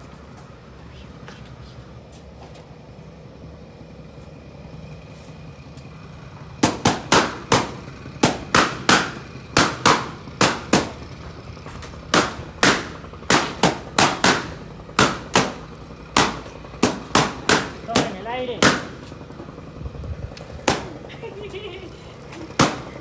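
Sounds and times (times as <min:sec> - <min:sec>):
balloons popping: 0:06.6 - 0:11.2, 0:11.8 - 0:19.2, 0:20.7 - 0:21.1, 0:22.4 - 0:23.0.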